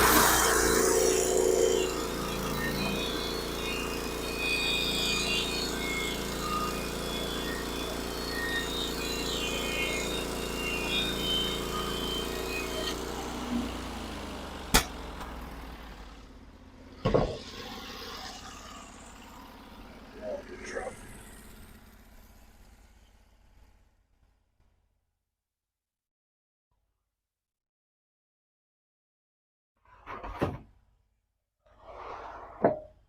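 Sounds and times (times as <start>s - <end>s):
saw blade cutting log: 0.0s - 15.7s
sawmill engine running: 0.0s - 23.6s
knock: 17.1s - 17.4s.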